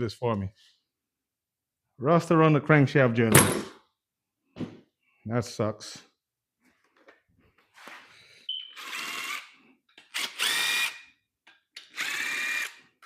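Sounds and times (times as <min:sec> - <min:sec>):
cordless drill motor whine: 0:08.5 - 0:09.6, 0:10.2 - 0:11.1, 0:11.8 - 0:12.8.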